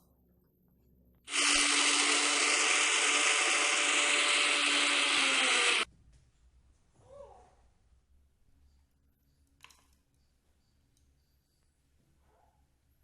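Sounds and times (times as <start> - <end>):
mixer grinder grinding peanuts: 1.3 - 5.9.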